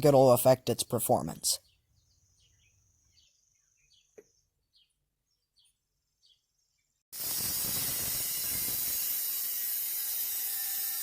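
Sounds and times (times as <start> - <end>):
faint bird chirps: 1.6 - 7.0
thin high whine: 7.2 - 9.5.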